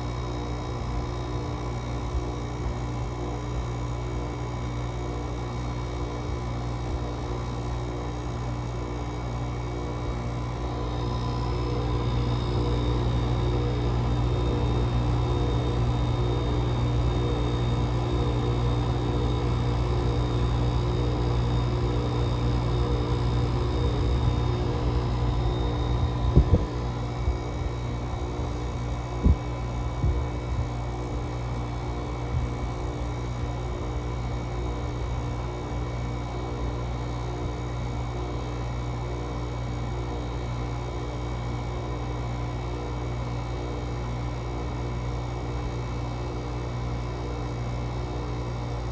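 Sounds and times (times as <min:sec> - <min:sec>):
air conditioner running: 0:00.0 - 0:48.9
faint high whine: 0:10.0 - 0:30.2.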